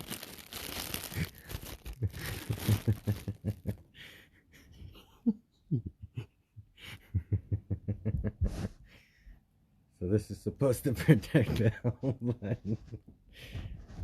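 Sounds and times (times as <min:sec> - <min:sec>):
packaging crinkling: 0:00.0 - 0:03.7
breathy held-in laughter: 0:01.2 - 0:08.8.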